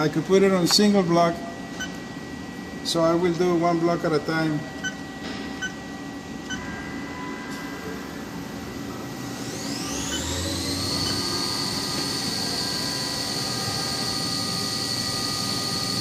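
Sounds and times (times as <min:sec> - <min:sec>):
machine running hum: 0:00.0 - 0:16.0
milling spindle whine: 0:08.9 - 0:16.0.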